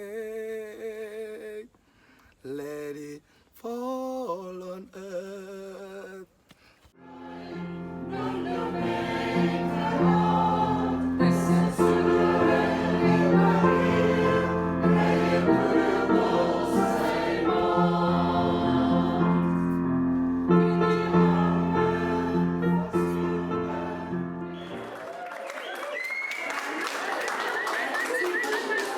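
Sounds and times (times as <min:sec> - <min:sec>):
choir singing gospel: 0:07.0 - 0:24.9.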